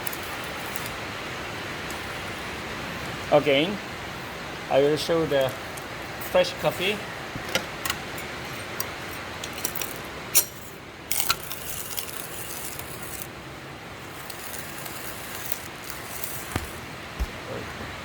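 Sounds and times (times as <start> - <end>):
beans cracking and clicking: 0.0 - 1.0, 8.7 - 13.4, 14.0 - 16.9
coffee grinder grinding beans: 0.0 - 1.0, 11.1 - 13.4, 14.0 - 16.9.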